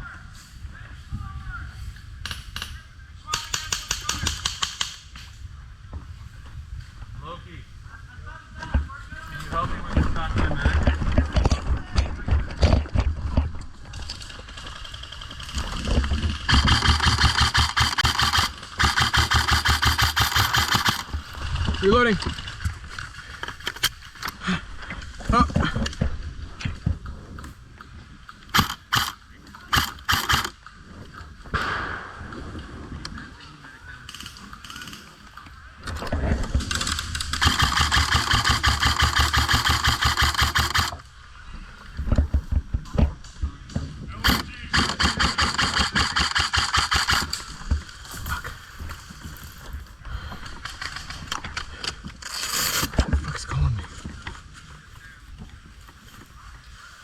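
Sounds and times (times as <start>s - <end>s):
airsoft gun full-auto bursts: 16.4s - 21.2s, 28.5s - 30.6s, 36.8s - 41.0s, 44.2s - 47.4s
gun being reloaded: 16.5s - 21.1s, 28.5s - 30.6s, 36.8s - 41.0s, 44.2s - 47.4s, 52.2s - 53.0s.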